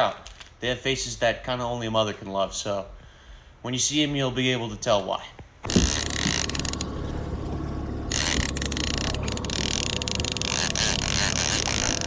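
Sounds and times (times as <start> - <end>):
boat engine running: 5.7 - 12.0.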